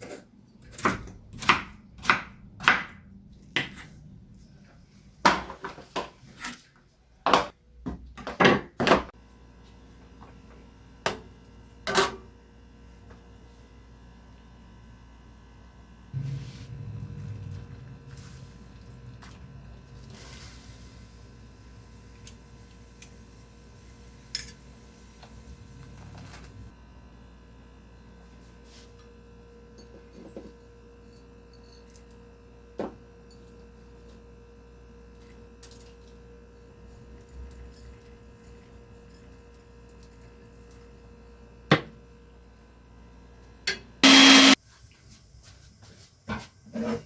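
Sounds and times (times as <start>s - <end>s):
steady low hum: 13.2s - 27.9s
loud burst of noise: 44.0s - 44.6s.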